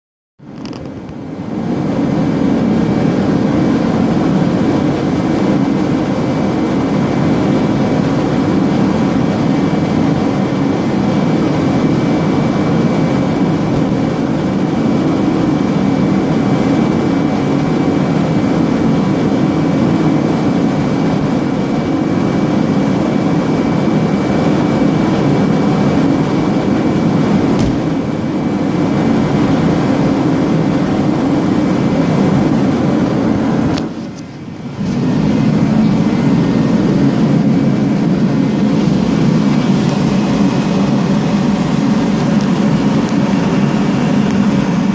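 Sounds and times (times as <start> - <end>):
road and wind noise in car cabin: 0.4 - 44.9
single knock: 27.6 - 27.9.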